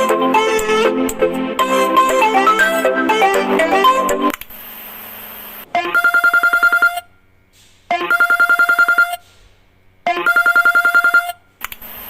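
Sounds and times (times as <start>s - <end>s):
telephone bell ringtone: 5.8s - 7.0s, 8.0s - 9.2s, 10.1s - 11.4s.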